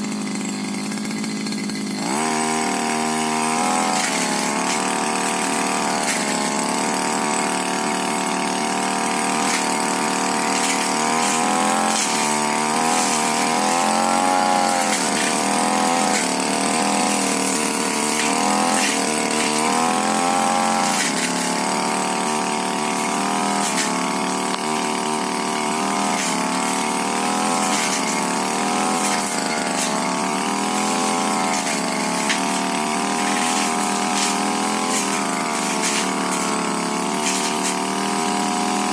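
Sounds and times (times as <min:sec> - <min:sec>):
brush cutter engine revving: 0:00.0 - 0:38.9.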